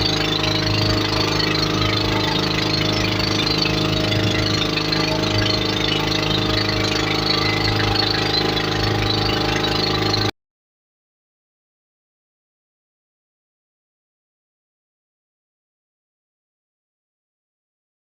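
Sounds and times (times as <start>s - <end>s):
motorboat engine running: 0.0s - 10.3s.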